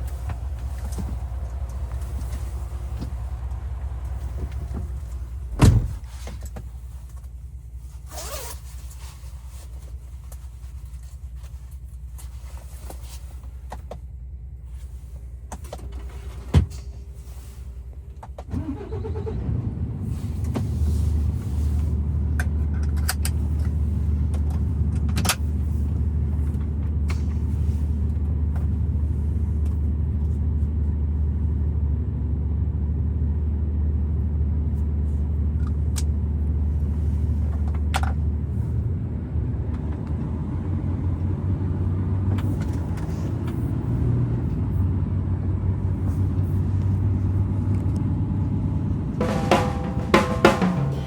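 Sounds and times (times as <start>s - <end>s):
heavy thump: 4.2s - 6.3s, 49.2s - 51.0s
engine starting and idling: 18.3s - 24.8s.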